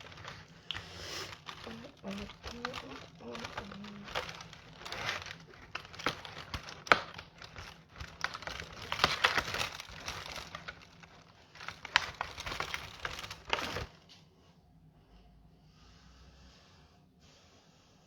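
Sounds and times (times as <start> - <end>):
packaging crinkling: 0.0 - 14.0.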